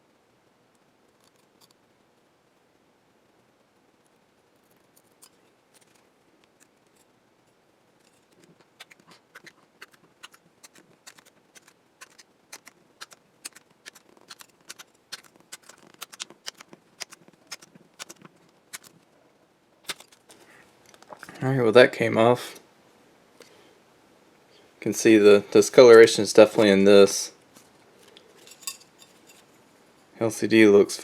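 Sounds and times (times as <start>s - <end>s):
film peeling with crackles: 4.6s - 7.2s, 8.0s - 19.2s, 19.8s - 21.4s.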